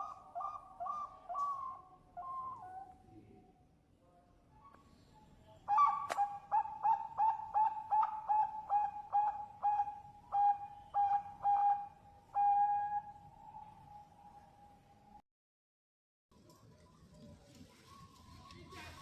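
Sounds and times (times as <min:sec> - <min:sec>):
dove cooing: 0:00.0 - 0:03.0, 0:05.7 - 0:13.9.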